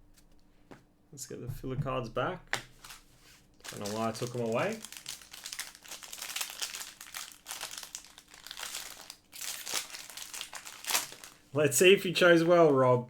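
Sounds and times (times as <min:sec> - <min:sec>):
plastic packaging crinkling: 0:03.6 - 0:11.5.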